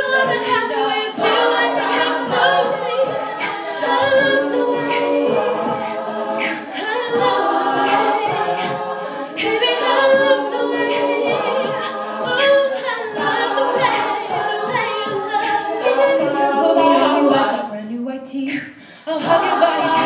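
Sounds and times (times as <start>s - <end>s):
sharp percussive hits: 0.0s - 17.4s
female group singing a cappella: 0.0s - 20.0s.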